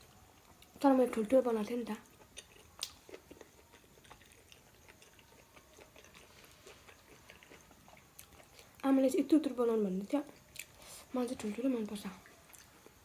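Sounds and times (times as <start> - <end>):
faint close-up chewing: 0.0 - 1.3, 1.9 - 8.9, 10.2 - 11.2, 11.8 - 13.0.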